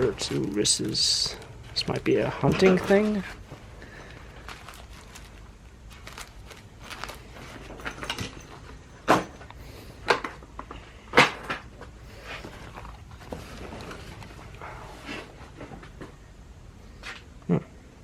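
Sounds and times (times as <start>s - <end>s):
objects knocking and clattering: 6.9s - 16.2s.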